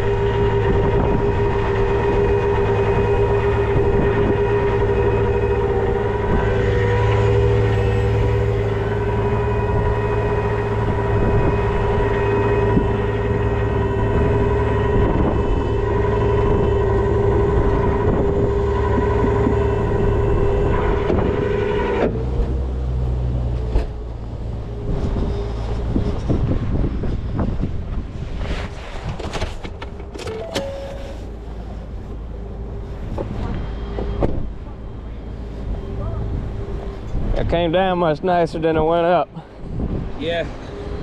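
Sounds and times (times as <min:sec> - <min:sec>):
hydraulic whine: 0:00.0 - 0:27.7, 0:30.0 - 0:37.9
truck engine running: 0:00.0 - 0:28.2, 0:29.9 - 0:41.0.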